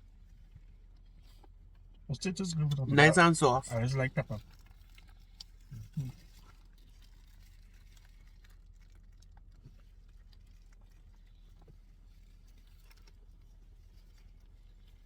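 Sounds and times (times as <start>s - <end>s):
low steady hum: 1.8s - 4.5s
murmured voice: 2.1s - 4.4s.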